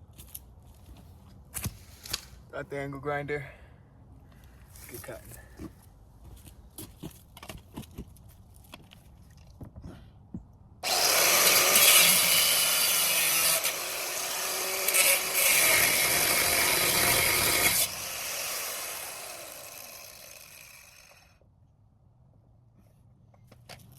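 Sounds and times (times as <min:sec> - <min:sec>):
angle grinder cutting metal: 0:10.8 - 0:21.3.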